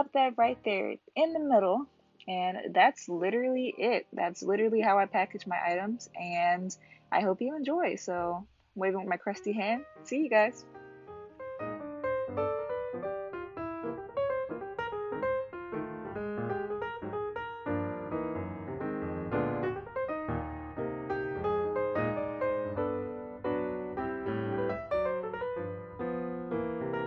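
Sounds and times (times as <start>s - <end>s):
gentle piano music: 2.8s - 7.6s, 8.8s - 27.0s.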